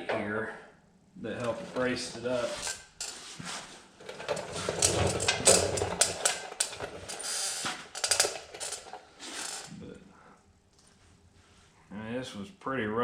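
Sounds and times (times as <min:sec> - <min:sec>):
hand tools and steel parts clinking: 0:01.4 - 0:03.3, 0:04.0 - 0:09.8.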